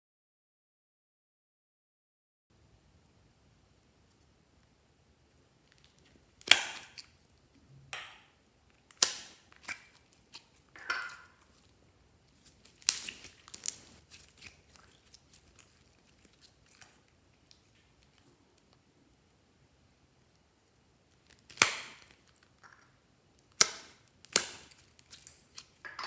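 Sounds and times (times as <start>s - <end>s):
slime squishing with wet pops: 5.6s - 7.4s, 8.0s - 18.7s, 21.2s - 26.0s.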